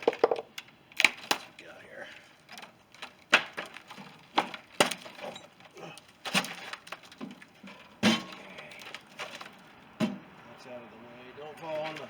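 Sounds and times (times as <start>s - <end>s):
wooden crate boards knocking: 0.0s - 1.5s, 3.0s - 5.3s
light bumps and rustling: 0.0s - 10.5s, 11.5s - 12.0s.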